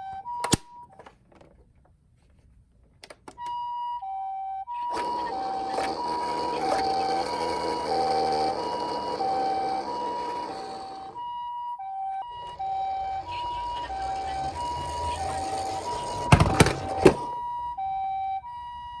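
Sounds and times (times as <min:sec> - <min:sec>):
toy electronic siren: 0:03.4 - 0:19.0
rolling noise: 0:04.9 - 0:11.3, 0:12.0 - 0:17.4.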